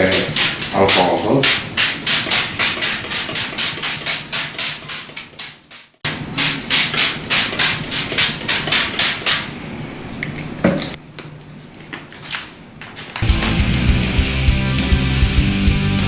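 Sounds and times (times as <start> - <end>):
spray bottle spritzes: 0.1 - 9.6.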